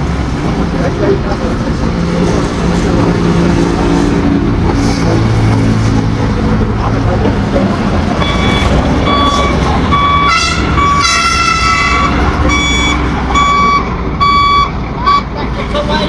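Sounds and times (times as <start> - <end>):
heavy diesel engine rumbling: 0.0 - 16.0
reversing alarm beeping: 8.2 - 15.3.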